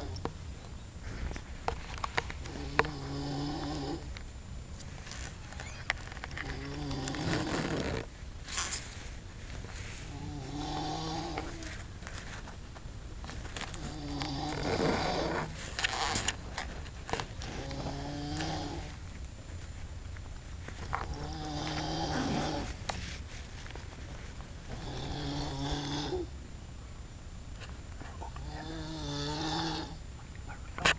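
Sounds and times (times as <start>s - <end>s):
man snoring: 2.5s - 4.1s, 6.4s - 8.1s, 10.1s - 11.7s, 13.8s - 15.6s, 17.4s - 19.0s, 21.1s - 22.8s, 24.7s - 26.3s, 28.4s - 30.0s.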